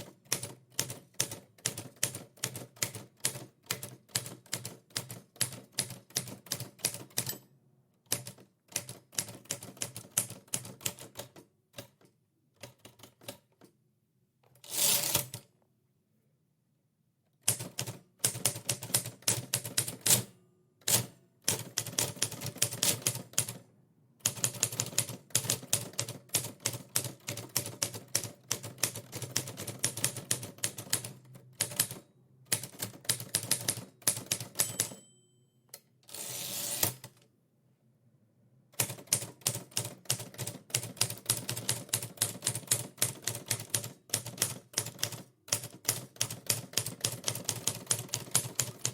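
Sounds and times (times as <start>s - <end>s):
typewriter keys clicking: 24.3s - 35.0s, 38.8s - 48.9s.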